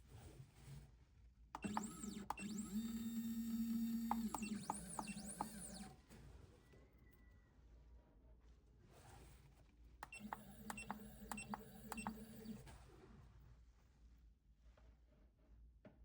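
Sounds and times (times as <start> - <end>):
stepper motors whining: 1.6 - 6.0, 10.0 - 12.6
sharp clicks: 3.9 - 5.9.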